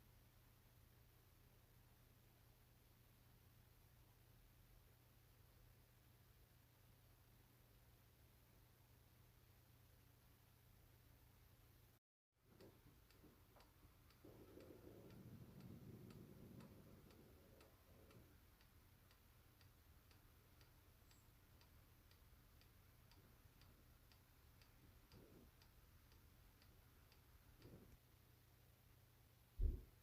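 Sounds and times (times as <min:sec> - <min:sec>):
faint ticking clock: 0:00.0 - 0:30.0
low rumble: 0:12.6 - 0:18.6.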